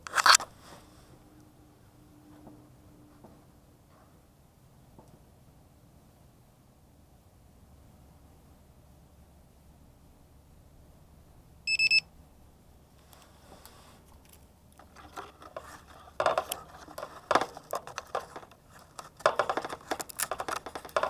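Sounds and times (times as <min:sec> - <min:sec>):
crackling rustling handling noise: 0:13.0 - 0:21.0.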